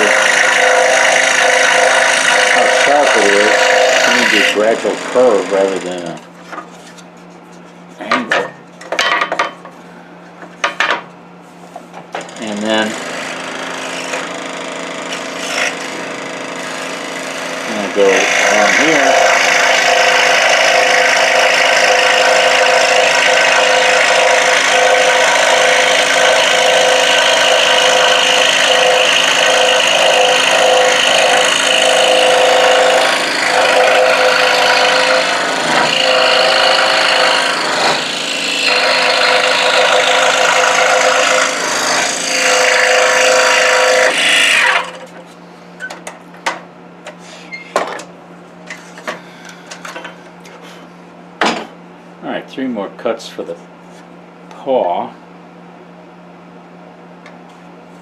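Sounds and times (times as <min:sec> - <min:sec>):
scroll saw cutting wood: 0:00.0 - 0:06.2, 0:12.4 - 0:45.2.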